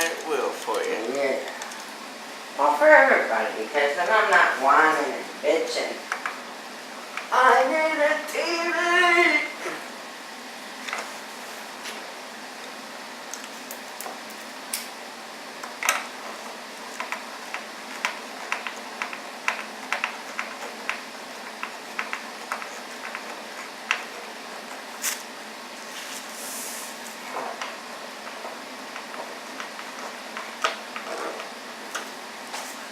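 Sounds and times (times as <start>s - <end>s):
plastic or foam sliding hiss: 25.0s - 27.2s.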